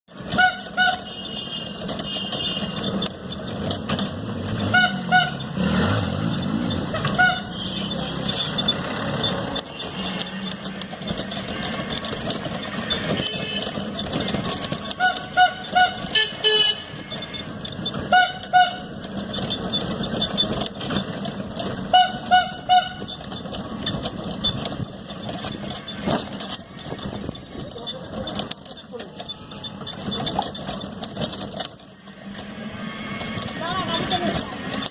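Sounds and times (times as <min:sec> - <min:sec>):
street traffic noise: 0:00.0 - 0:34.9
vehicle horn tooting: 0:00.3 - 0:02.9, 0:04.6 - 0:05.5, 0:07.0 - 0:08.2, 0:12.7 - 0:19.0, 0:21.8 - 0:23.1.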